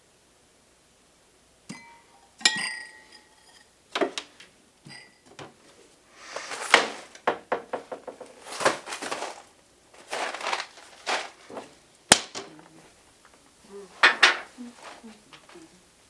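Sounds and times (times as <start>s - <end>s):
rustling and crinkling: 5.3s - 15.8s.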